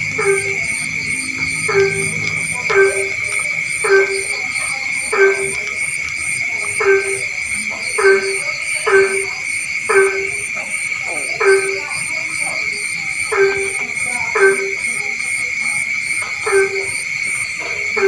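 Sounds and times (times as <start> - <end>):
frog calling: 0.0 - 18.0
high-pitched insect chorus: 0.0 - 18.0
pulsing insect call: 0.0 - 18.0.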